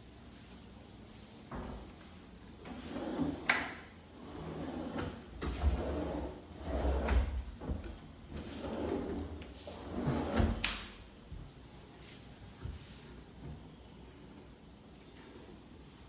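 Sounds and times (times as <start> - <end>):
drawers sliding on runners: 2.6 - 3.5, 4.2 - 7.4, 8.3 - 10.6.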